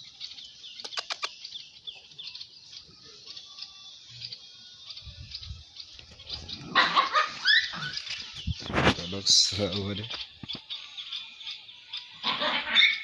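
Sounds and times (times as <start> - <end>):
small birds chirping: 0.0 - 13.0
sharp clicks: 0.8 - 1.4.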